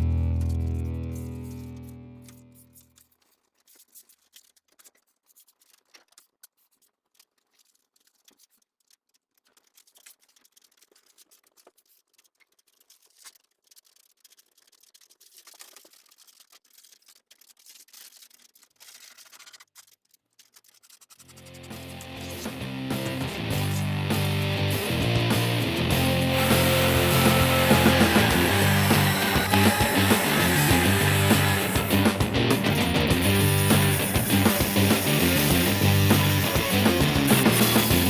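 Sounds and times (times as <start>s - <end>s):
hand tool scratching wood: 24.8s - 38.0s.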